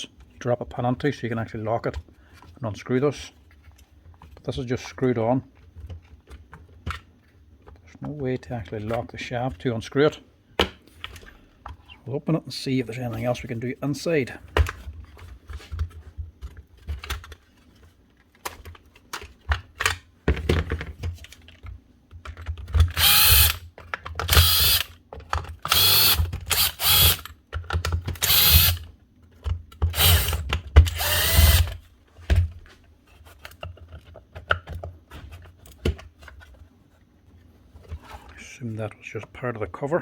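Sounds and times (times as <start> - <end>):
cordless drill whirring: 22.9 - 23.6, 24.3 - 25.0, 25.7 - 27.3, 28.2 - 28.8, 29.9 - 31.8.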